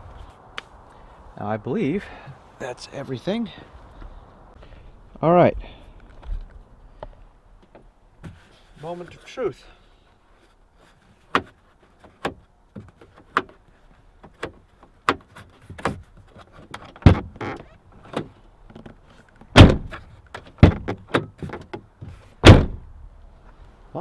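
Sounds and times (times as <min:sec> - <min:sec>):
car door shutting thuds: 0:19.5 - 0:23.0.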